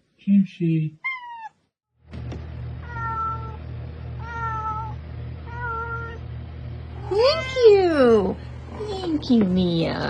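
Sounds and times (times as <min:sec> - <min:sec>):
cat meowing: 0:01.0 - 0:01.6, 0:02.8 - 0:03.6, 0:04.2 - 0:06.2
steady low hum: 0:02.0 - 0:10.0.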